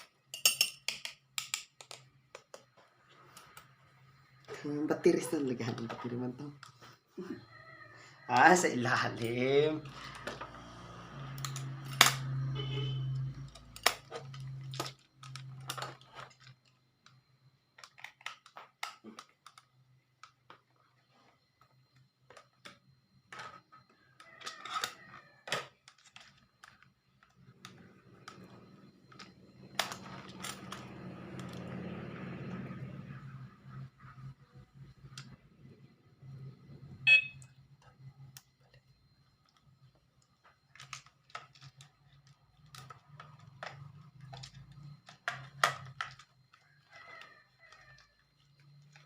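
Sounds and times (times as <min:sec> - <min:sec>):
plastic and metal parts clicking: 0:17.8 - 0:20.7, 0:39.4 - 0:49.0.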